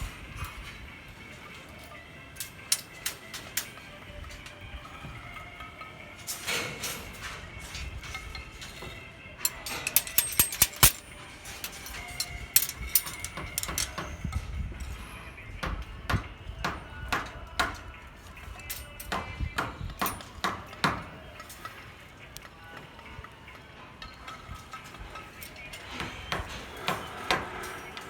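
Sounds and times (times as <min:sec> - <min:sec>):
metallic knocks of steel bars: 0:09.4 - 0:11.0, 0:11.6 - 0:14.1.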